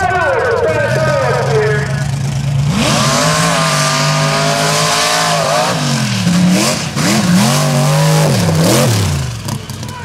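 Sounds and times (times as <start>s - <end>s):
truck engine revving hard: 0.0s - 9.9s
loud rushing noise: 2.1s - 9.4s.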